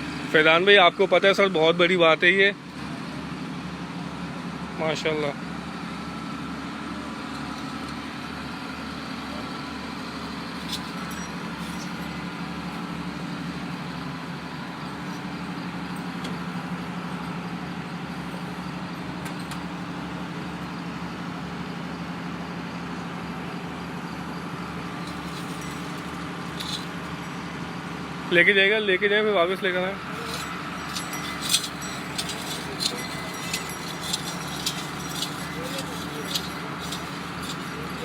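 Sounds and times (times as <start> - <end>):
engine idling: 0.0 - 38.0.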